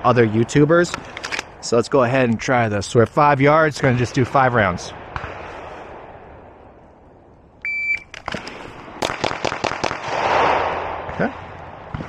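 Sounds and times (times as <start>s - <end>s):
shot timer beep: 7.6s - 8.1s
rapid pistol shots: 8.2s - 11.1s.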